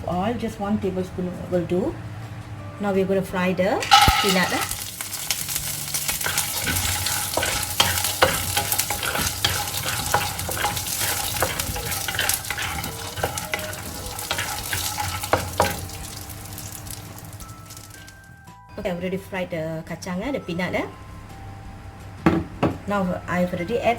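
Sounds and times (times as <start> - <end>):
nuts and utensil scraping pan: 3.8 - 18.2
peanuts sizzling in a pan: 3.8 - 18.4.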